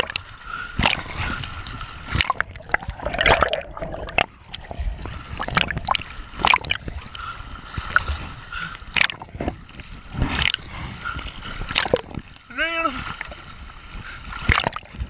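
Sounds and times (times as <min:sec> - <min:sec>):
sharp water splashes: 0:00.0 - 0:09.5, 0:10.1 - 0:13.6, 0:14.3 - 0:15.0.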